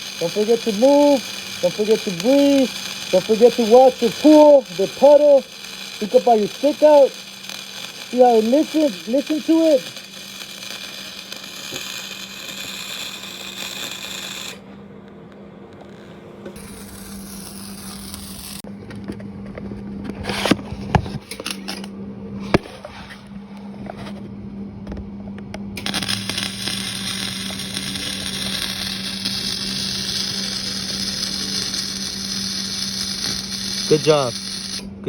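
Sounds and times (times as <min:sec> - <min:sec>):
welding arc crackling: 0:00.0 - 0:14.6, 0:16.5 - 0:18.7, 0:25.8 - 0:35.0
low electrical hum: 0:00.0 - 0:35.0.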